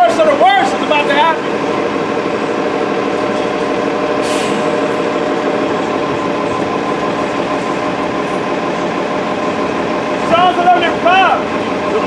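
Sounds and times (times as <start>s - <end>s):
vehicle running: 0.0s - 12.0s
sharp hiss of air: 4.2s - 4.9s.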